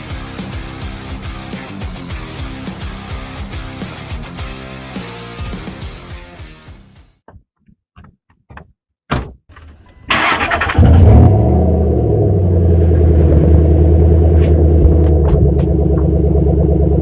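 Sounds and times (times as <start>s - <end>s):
engine idling: 11.5s - 17.0s.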